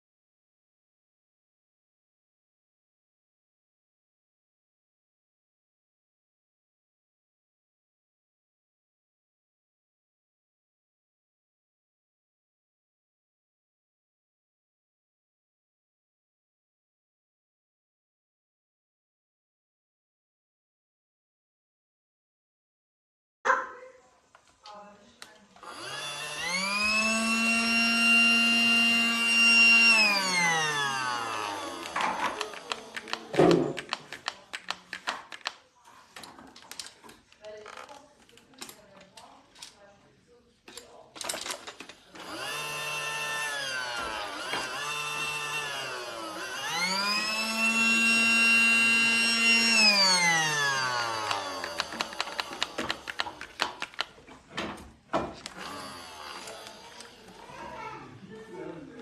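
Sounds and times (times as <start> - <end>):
toy vacuum motor humming: 25.6 - 34.5, 42.1 - 54.1, 55.4 - 57.9.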